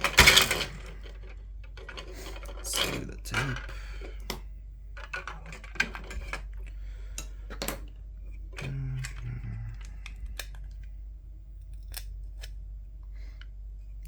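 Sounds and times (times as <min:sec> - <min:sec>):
short low hum: 0:06.0 - 0:14.0.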